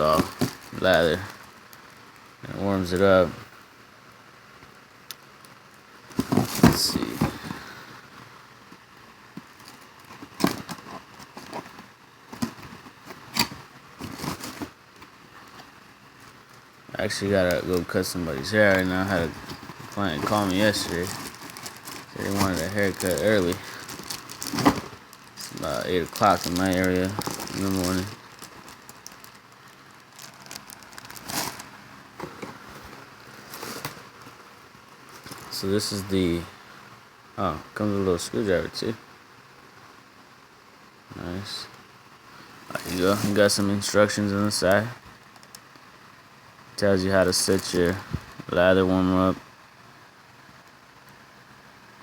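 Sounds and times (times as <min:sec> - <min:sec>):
packaging rustling and crinkling: 0:00.0 - 0:03.0, 0:06.1 - 0:07.9, 0:09.3 - 0:34.4, 0:35.1 - 0:35.6, 0:42.7 - 0:44.0, 0:47.3 - 0:48.5.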